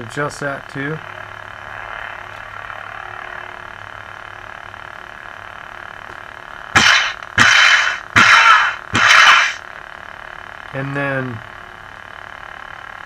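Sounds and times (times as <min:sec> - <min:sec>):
lightsaber idle hum: 0:00.0 - 0:13.0
lightsaber clash crashes: 0:06.8 - 0:09.6.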